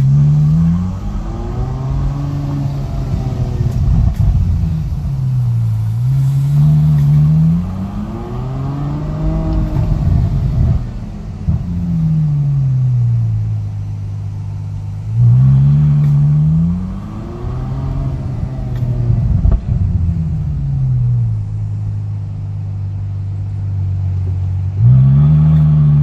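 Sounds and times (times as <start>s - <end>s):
car engine idling and revving: 0.0s - 26.0s.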